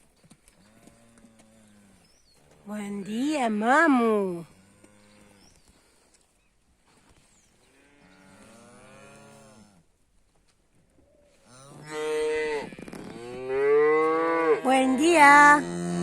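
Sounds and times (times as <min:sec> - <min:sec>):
cows mooing: 0:11.5 - 0:16.0.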